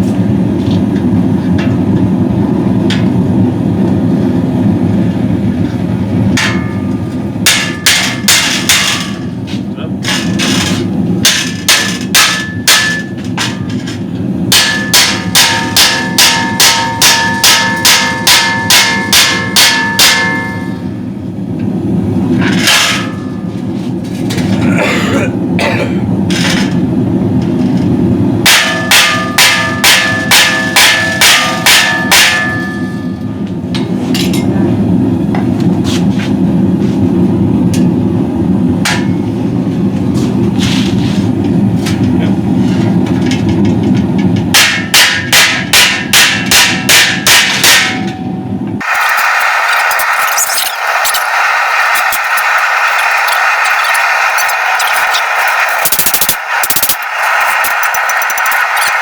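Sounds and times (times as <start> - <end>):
hammer striking steel: 6.4 - 9.3, 11.2 - 21.0, 22.4 - 23.3, 28.5 - 34.4, 44.5 - 59.0.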